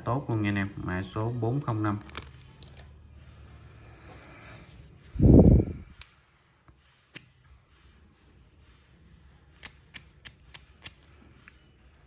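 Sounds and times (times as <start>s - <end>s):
metal lighter clicks: 9.6s - 11.1s.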